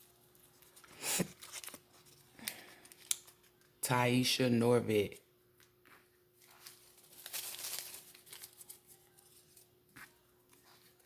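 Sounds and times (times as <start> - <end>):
paper rustling and crinkling: 0.0 - 3.6, 6.4 - 11.0.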